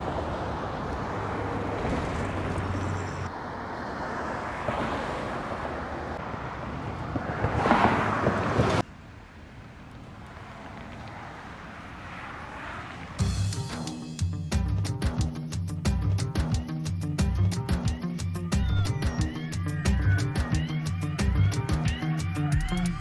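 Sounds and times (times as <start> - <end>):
distant traffic hum: 0.0 - 23.0
passing vehicles: 0.0 - 23.0.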